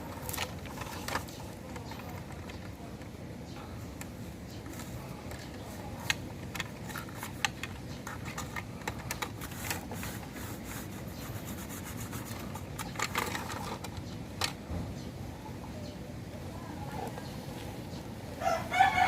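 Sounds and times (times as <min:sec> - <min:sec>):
toy backhoe scraping through sand: 0:06.0 - 0:13.9.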